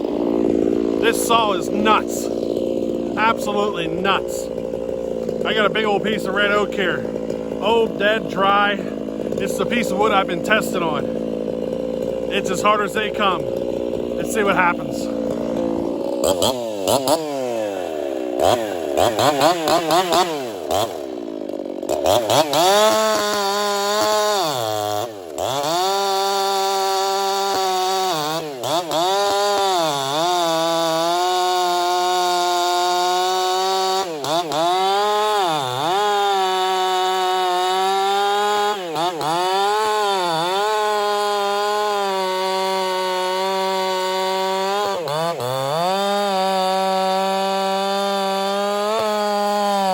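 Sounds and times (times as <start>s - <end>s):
chainsaw cutting log: 0.0s - 49.9s.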